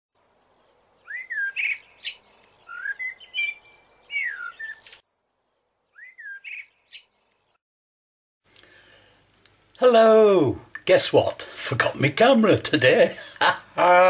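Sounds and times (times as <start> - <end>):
songbird singing whistled phrases: 1.0 - 5.0, 5.9 - 7.1.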